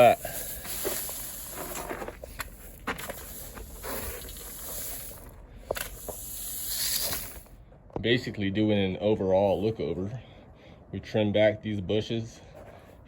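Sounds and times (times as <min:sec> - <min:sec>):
broom sweeping over rocks: 0:00.0 - 0:07.6
stones clicking: 0:00.0 - 0:07.6.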